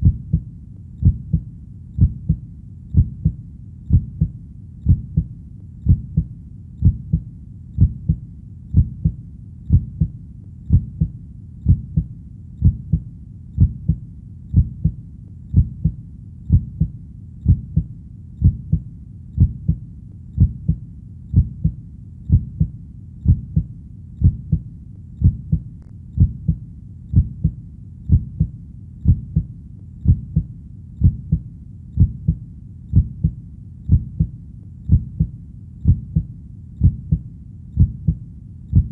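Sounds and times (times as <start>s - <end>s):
heartbeat double thump: 0.0s - 1.4s, 2.0s - 2.4s, 3.0s - 7.2s, 10.7s - 11.1s, 11.7s - 13.0s, 13.6s - 18.8s, 19.4s - 19.8s, 20.4s - 24.6s, 25.2s - 31.4s, 32.0s - 34.3s, 34.9s - 37.2s, 37.8s - 38.9s.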